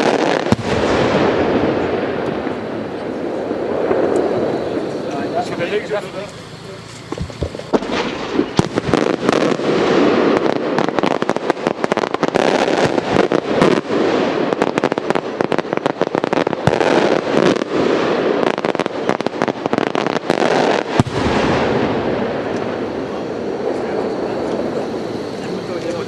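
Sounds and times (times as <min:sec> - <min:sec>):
firework shells crackling: 0:00.0 - 0:26.0.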